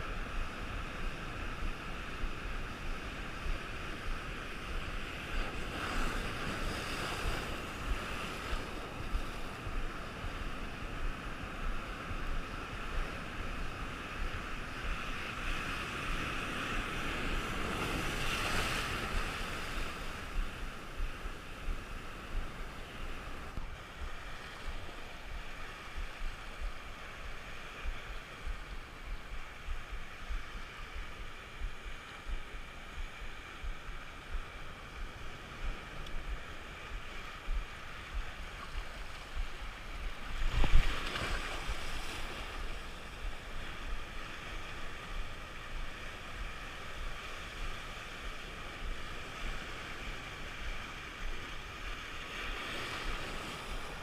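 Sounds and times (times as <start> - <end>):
rough sea surf: 0.0 - 54.0
wind buffeting microphone: 0.0 - 54.0.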